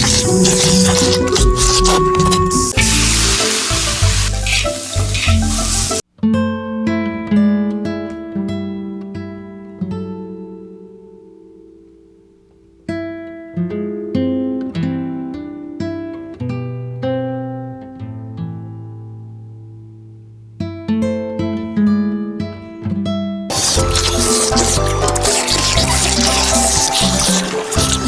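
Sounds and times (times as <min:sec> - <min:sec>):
slow plucked string notes: 0:00.0 - 0:12.2, 0:22.8 - 0:28.0.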